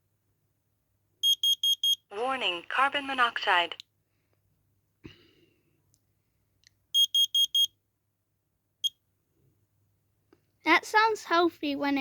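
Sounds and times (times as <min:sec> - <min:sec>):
alarm chirp: 0:01.2 - 0:02.0, 0:07.0 - 0:07.7
quick high beeps: 0:07.0 - 0:07.7.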